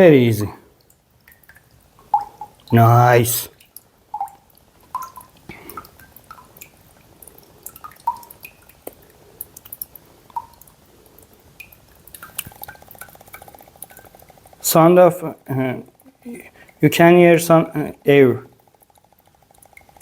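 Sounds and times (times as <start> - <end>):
coconut water dripping and glugging: 0.4 - 20.0.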